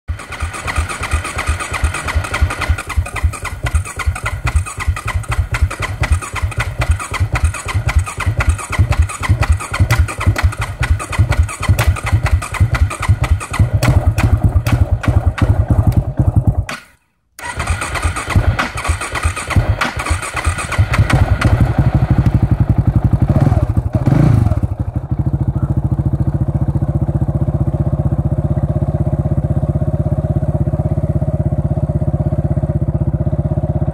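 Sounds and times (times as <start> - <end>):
electric starter cranking: 0.1 - 22.3
motorcycle engine idling: 0.1 - 33.9.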